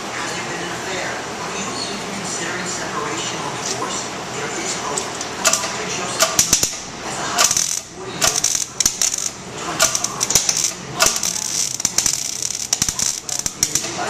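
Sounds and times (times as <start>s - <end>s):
welder crackling: 5.0s - 14.0s.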